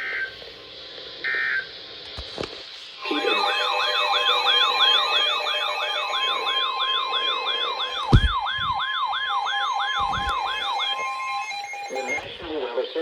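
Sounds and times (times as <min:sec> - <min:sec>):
falling yelp siren: 0:03.1 - 0:12.5
thump: 0:08.1 - 0:08.8.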